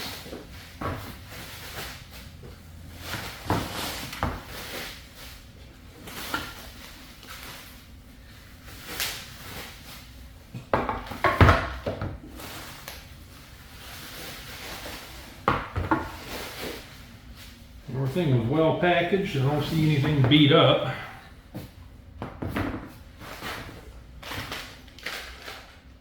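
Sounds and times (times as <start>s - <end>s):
packing material rustling: 23.2s - 25.9s.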